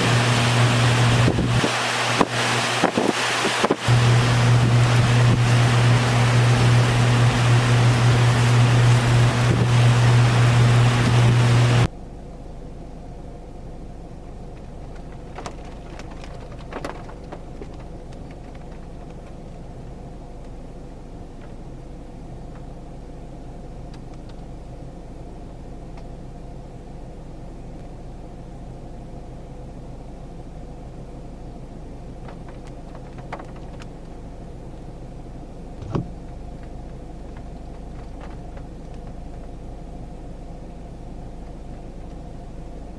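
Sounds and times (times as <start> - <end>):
car engine idling: 0.0 - 42.9
faint steady hum: 0.0 - 42.9
small clicks: 32.2 - 34.2
loud thump: 35.8 - 36.2.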